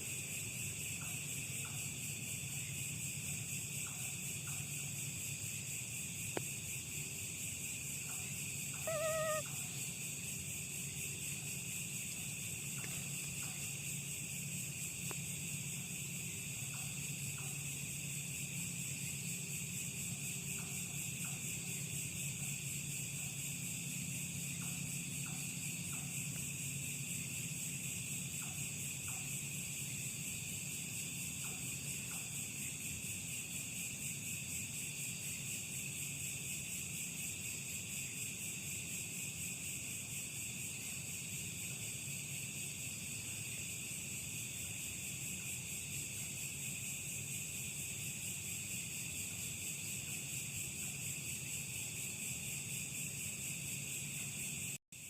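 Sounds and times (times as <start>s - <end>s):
wavering animal call: 8.7s - 9.7s
insects shrilling: 8.7s - 9.8s.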